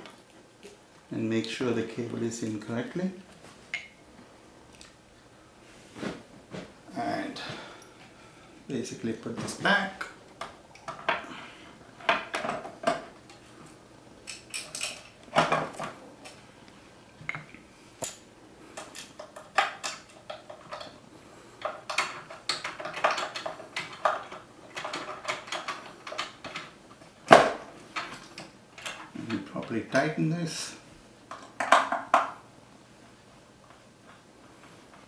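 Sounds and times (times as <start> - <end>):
small hard parts clicking and rattling: 14.2 - 16.4, 17.3 - 21.0, 21.6 - 29.5, 31.3 - 32.4.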